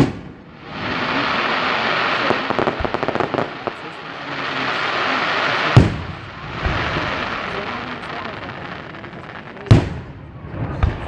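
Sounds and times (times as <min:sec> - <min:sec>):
loud firework bang: 0:00.0 - 0:03.9, 0:05.6 - 0:08.3, 0:09.6 - 0:11.0
crackling firework pops: 0:00.0 - 0:11.0
dense firework hiss: 0:00.0 - 0:11.0.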